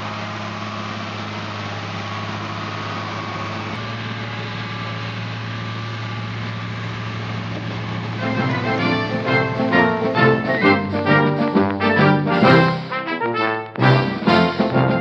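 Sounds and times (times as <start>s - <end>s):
tractor engine humming: 0.0s - 13.2s, 13.8s - 15.0s
brass music: 8.2s - 15.0s.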